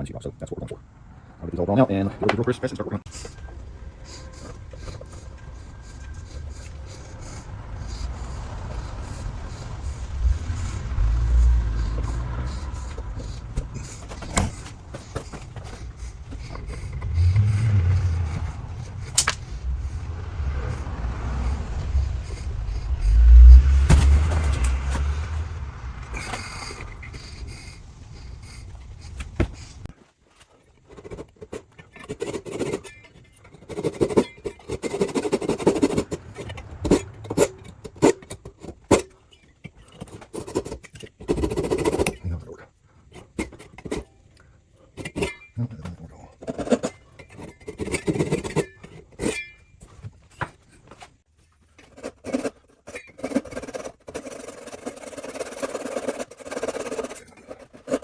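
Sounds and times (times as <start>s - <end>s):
wood pieces and tools clattering: 19.0s - 19.4s.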